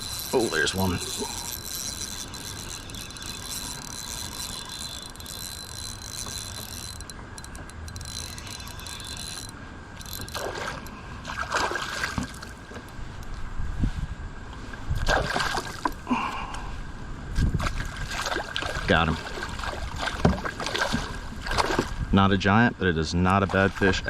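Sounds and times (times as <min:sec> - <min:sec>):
fishing reel winding: 0:00.0 - 0:10.9
fish splashing water: 0:10.1 - 0:12.6, 0:15.0 - 0:16.0, 0:17.6 - 0:22.0.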